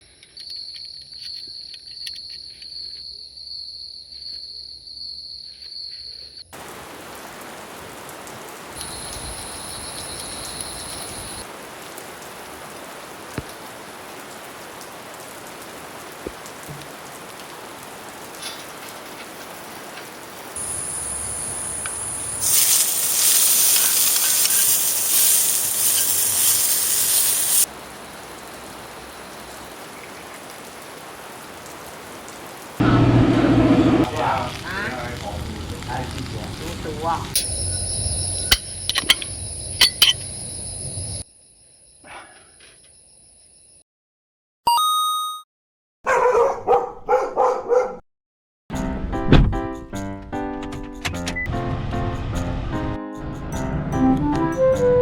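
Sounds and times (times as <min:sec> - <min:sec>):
insects trilling: 0:00.1 - 0:06.7, 0:08.8 - 0:11.5, 0:20.3 - 0:30.6, 0:37.4 - 0:43.8
rain pattering: 0:06.6 - 0:41.2
loud hiss: 0:20.6 - 0:27.7.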